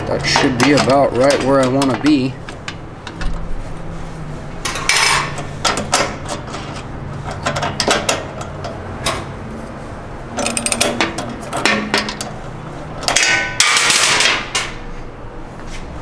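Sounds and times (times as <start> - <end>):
metal scrape: 3.4 - 7.3
metal clinks and knocks: 4.6 - 6.5, 10.4 - 12.4.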